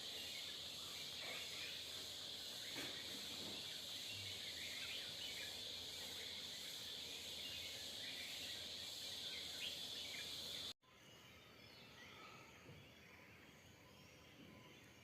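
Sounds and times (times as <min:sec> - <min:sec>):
small birds chirping: 0:00.0 - 0:10.7
high-pitched insect drone: 0:00.0 - 0:11.4.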